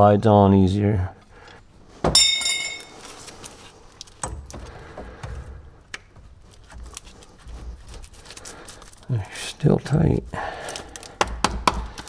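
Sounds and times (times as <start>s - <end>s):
metallic clang: 2.1s - 3.2s.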